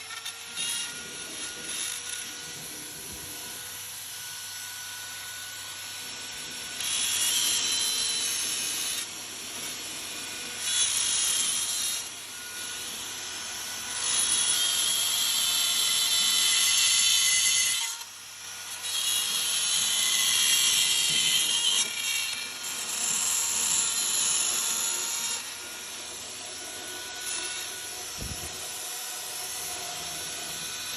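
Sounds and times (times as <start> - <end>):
power tool cutting wood: 0.0 - 30.9.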